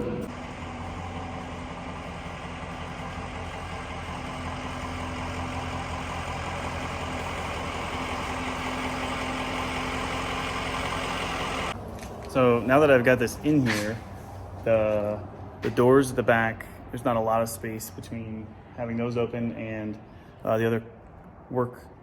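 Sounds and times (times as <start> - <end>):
engine idling: 0.0 - 14.8.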